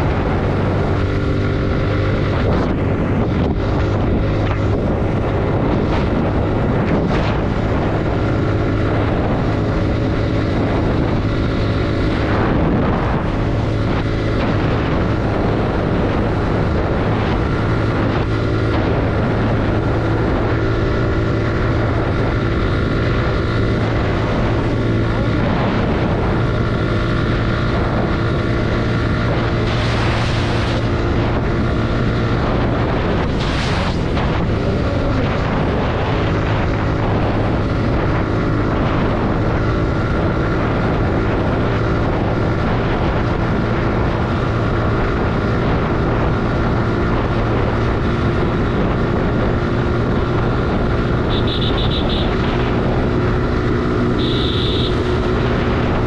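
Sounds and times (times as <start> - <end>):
motorcycle engine running: 0.0 - 56.0
wind rushing over microphone: 0.0 - 56.0
short high-pitched beep: 54.2 - 55.0.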